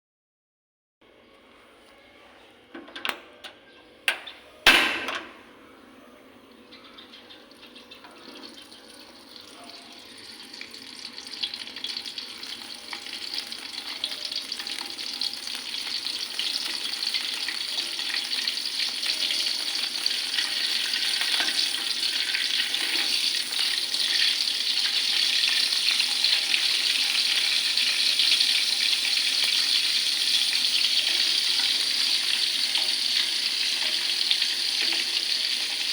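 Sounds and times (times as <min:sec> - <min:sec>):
fish frying in oil: 0:07.0 - 0:35.9.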